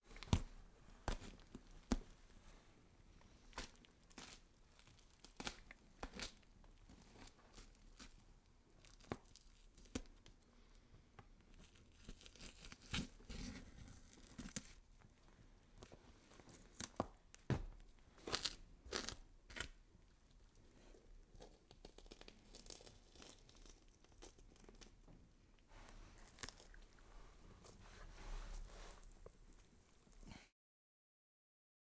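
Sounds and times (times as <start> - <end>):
flesh scraping and cutting: 11.7 - 14.8, 17.9 - 19.8, 21.4 - 24.9, 25.9 - 29.5.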